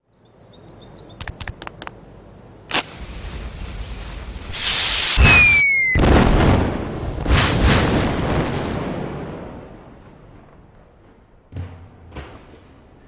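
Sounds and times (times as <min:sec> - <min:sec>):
firework clicks and crack: 0:01.2 - 0:02.0, 0:02.7 - 0:05.7, 0:06.9 - 0:08.7
fuse-like hiss: 0:02.6 - 0:05.6
short falling whistle: 0:04.6 - 0:06.2.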